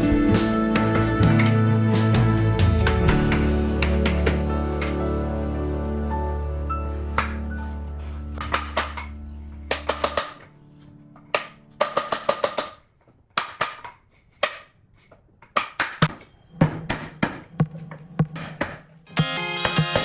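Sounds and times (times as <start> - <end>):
music: 0.0 - 12.7, 16.6 - 20.0
sharp knocks: 0.6 - 1.6, 2.9 - 5.0, 8.4 - 10.4, 11.3 - 12.8.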